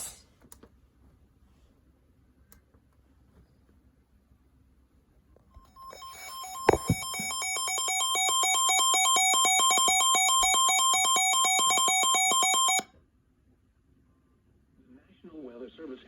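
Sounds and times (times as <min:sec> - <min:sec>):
electronic two-tone alert: 0:05.7 - 0:12.8.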